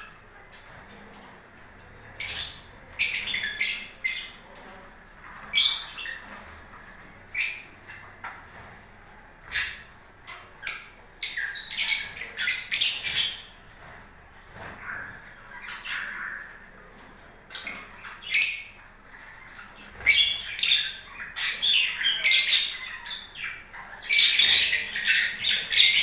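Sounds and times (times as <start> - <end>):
lovebirds squawking: 14.6 - 16.8, 17.4 - 26.0.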